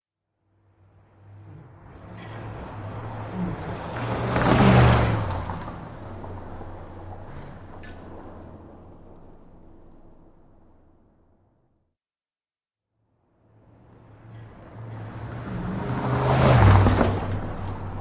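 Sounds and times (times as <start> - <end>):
car passing by at speed: 0.8 - 10.3, 13.6 - 18.0.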